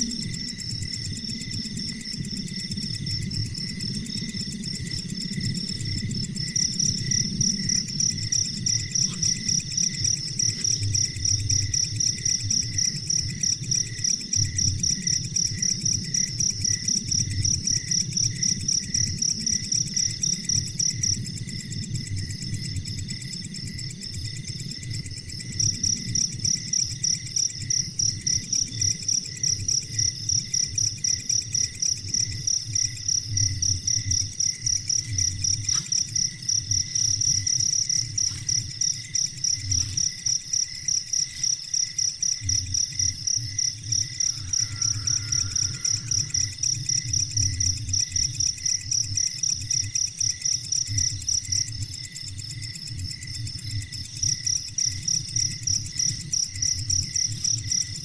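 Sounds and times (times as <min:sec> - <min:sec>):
crickets chirping high: 0:00.0 - 0:58.0
lower pulsing chirp: 0:44.0 - 0:46.9.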